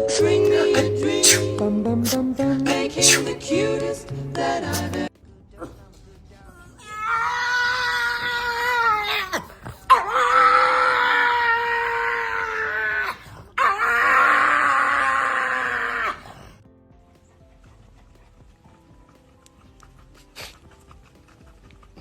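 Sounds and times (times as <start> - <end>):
dog howling: 6.6 - 16.5.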